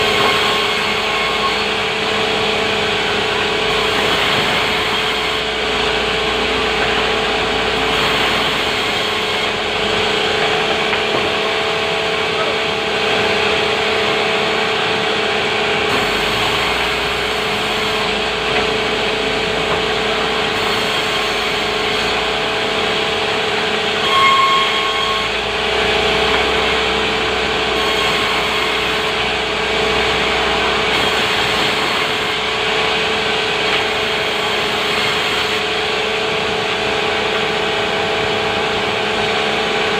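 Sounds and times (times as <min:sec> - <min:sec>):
sawmill machinery hum: 0:00.0 - 0:39.9
timber sawing: 0:00.0 - 0:39.9
short high squeal: 0:23.9 - 0:25.7.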